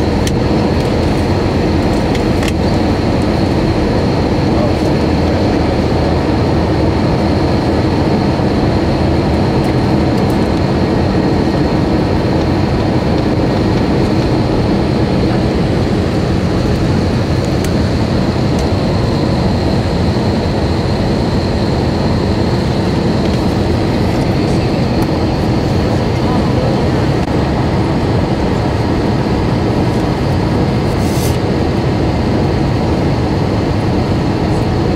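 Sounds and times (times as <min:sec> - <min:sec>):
jet cabin engine noise: 0:00.0 - 0:34.9.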